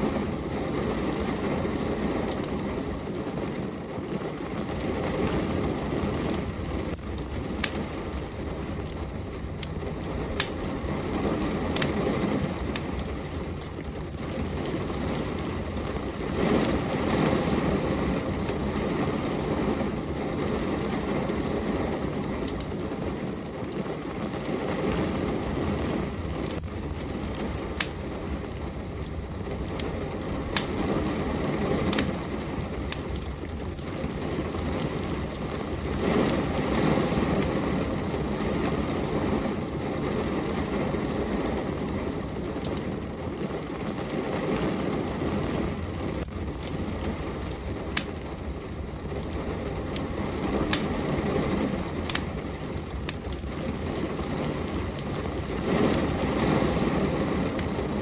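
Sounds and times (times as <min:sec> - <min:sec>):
fire popping: 0:00.0 - 0:58.0
steady rain: 0:00.0 - 0:58.0
wood fire crackling: 0:00.0 - 0:58.0.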